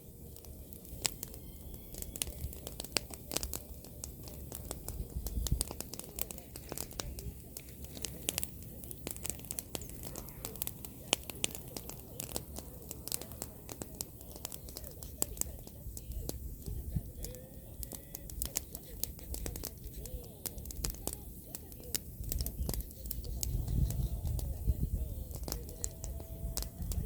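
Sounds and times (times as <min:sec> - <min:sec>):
bonfire crackling and popping: 0:00.0 - 0:27.0
low fire rumble: 0:00.0 - 0:27.0.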